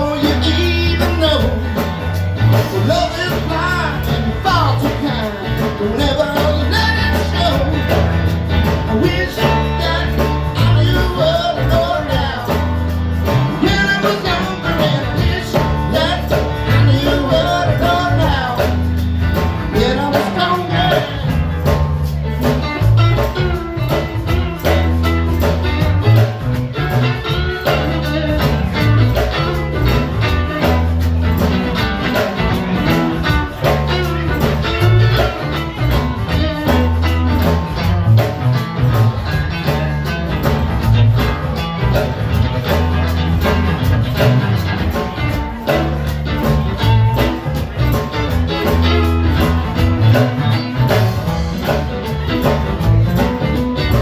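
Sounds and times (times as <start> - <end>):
person singing: 0.0 - 21.5
band playing: 0.0 - 54.0
bass line: 0.0 - 54.0
drum beat: 0.0 - 54.0.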